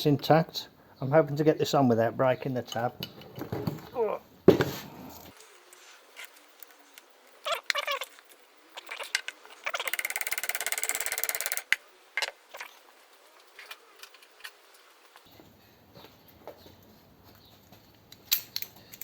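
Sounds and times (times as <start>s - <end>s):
rapid ratcheting clicks: 9.6s - 11.8s.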